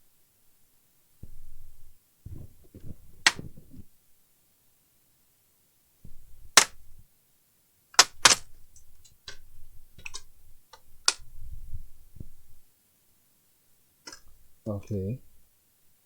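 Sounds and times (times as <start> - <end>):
plastic parts clicking: 8.0 - 9.4, 10.0 - 11.2.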